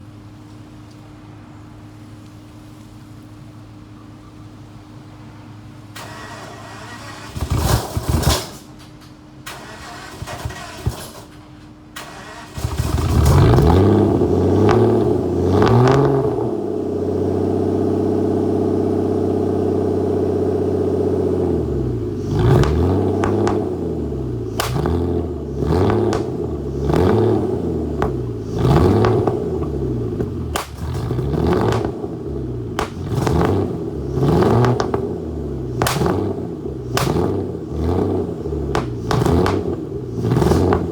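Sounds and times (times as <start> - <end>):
exhaust pops and backfires: 5.9 - 40.9
car engine revving: 6.0 - 8.6, 12.0 - 40.9
car engine cranking: 6.0 - 16.6, 21.4 - 40.9.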